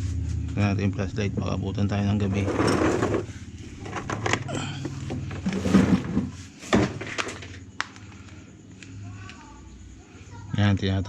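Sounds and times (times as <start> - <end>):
scooter parts clattering: 2.2 - 7.7.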